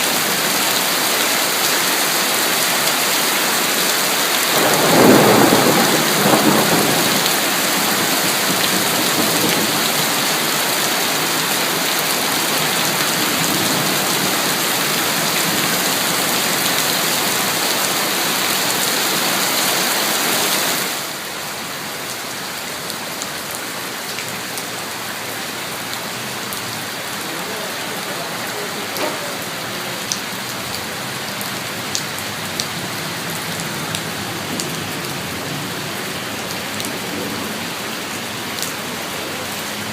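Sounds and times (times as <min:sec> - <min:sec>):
heavy rain: 0:00.0 - 0:39.9
thunder rumble: 0:04.5 - 0:10.0.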